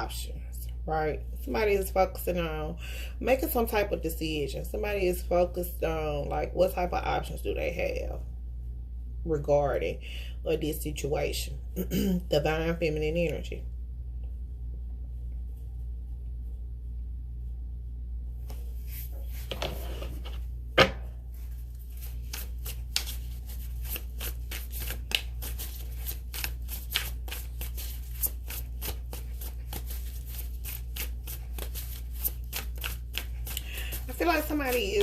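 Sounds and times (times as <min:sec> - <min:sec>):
steady low hum: 0:00.0 - 0:35.0
cards being shuffled: 0:21.4 - 0:35.0.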